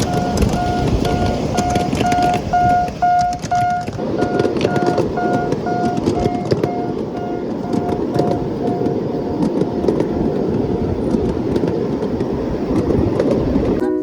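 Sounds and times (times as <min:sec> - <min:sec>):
short beeping tone: 0:00.0 - 0:08.9
mini train wheels and motor rumble: 0:00.0 - 0:13.8.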